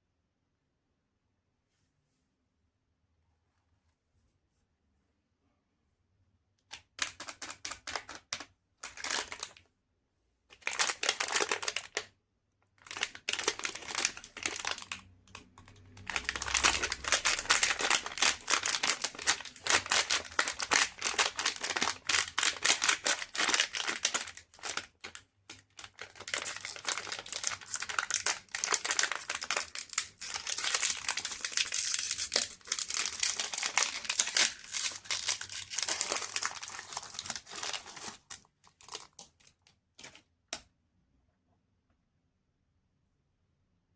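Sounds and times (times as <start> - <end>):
wrapper crinkling and tearing: 7.0 - 9.6, 10.5 - 12.1, 12.8 - 40.2.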